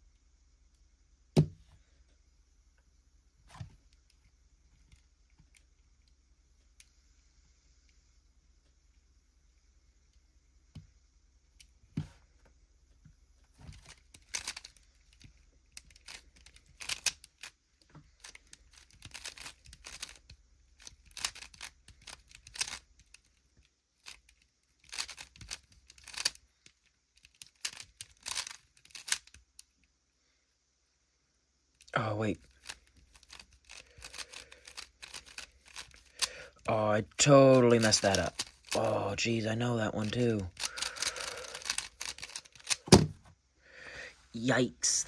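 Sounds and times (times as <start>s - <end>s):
puzzle cube turning rapidly: 13.7s - 29.6s, 31.9s - 43.2s.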